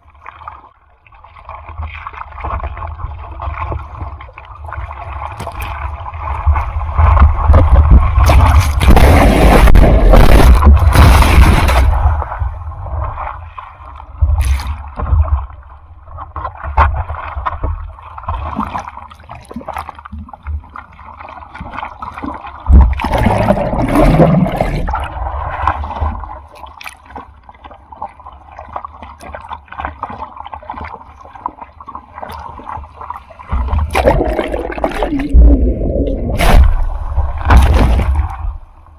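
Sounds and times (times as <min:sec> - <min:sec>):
water sloshing and gurgling: 0:00.0 - 0:38.9
surf breaking with deep rumble: 0:05.2 - 0:15.5, 0:22.7 - 0:26.3, 0:33.4 - 0:38.9.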